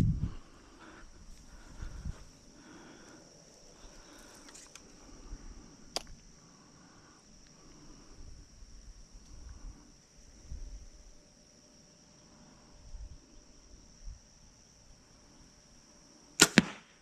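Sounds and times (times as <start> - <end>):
insects droning: 0.0 - 17.0
sharp click: 5.9 - 6.2.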